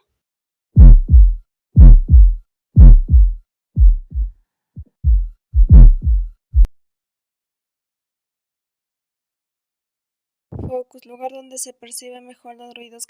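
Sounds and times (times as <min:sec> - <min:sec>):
faint low extra heart sound: 0:00.8 - 0:06.7
heartbeat through a stethoscope: 0:00.8 - 0:06.7.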